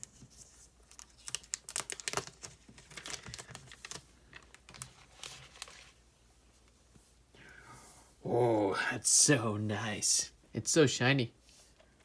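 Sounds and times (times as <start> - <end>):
plastic film crinkling: 0.0 - 6.0.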